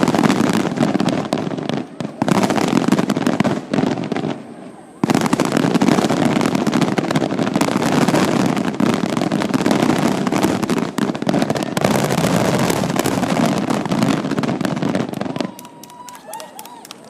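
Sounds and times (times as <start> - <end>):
fireworks barrage bursting: 0.0 - 16.8
sharp firework bangs: 5.0 - 15.6.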